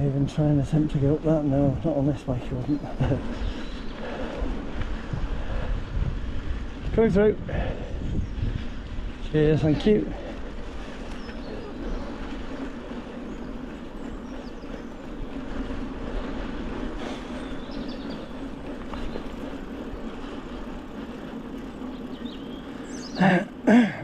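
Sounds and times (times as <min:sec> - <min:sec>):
wind noise on microphone: 0:00.0 - 0:23.2
bike tyres rumbling on trail: 0:00.0 - 0:24.0.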